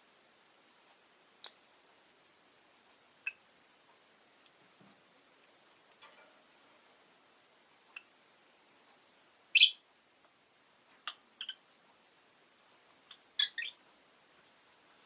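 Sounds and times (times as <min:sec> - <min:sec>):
lovebirds chirping: 0:09.5 - 0:09.8, 0:11.0 - 0:11.7, 0:13.0 - 0:13.8.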